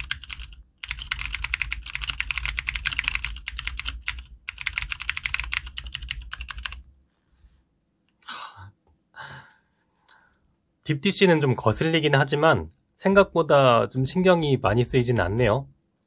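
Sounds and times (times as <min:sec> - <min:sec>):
fast typing on clicky keyboard: 0:00.0 - 0:06.8.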